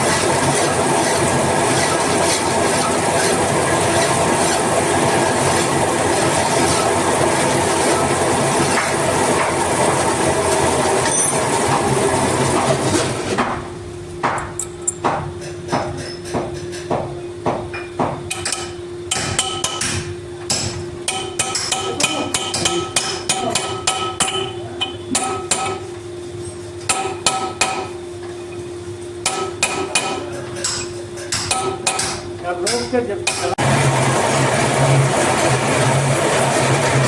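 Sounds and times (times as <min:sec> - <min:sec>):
hammer striking steel: 0:14.2 - 0:25.8, 0:26.9 - 0:28.0, 0:29.2 - 0:33.6.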